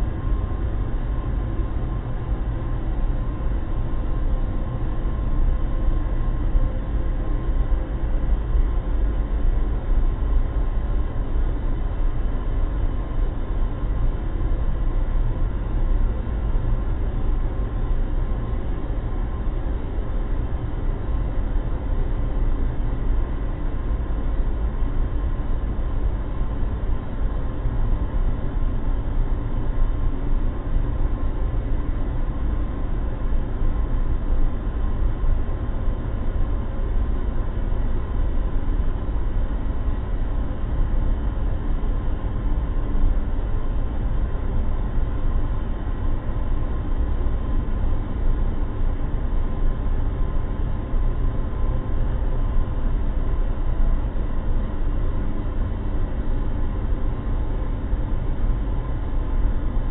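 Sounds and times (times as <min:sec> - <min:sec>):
faint steady hum: 0:00.0 - 0:59.9.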